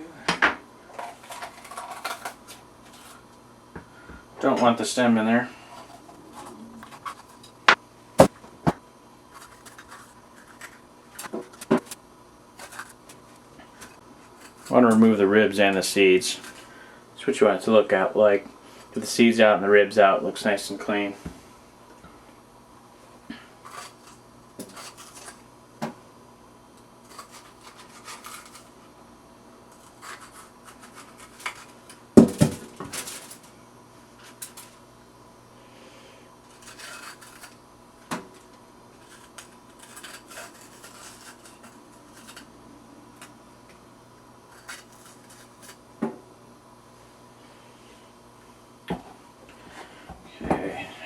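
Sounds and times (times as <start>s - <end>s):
knife scraping on board: 36.6s - 37.6s, 39.1s - 42.4s.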